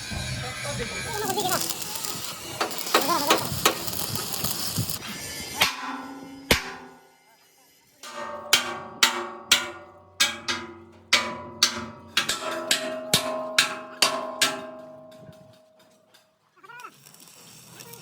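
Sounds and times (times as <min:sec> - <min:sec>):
hammer striking steel: 0:05.2 - 0:07.3, 0:08.0 - 0:16.0.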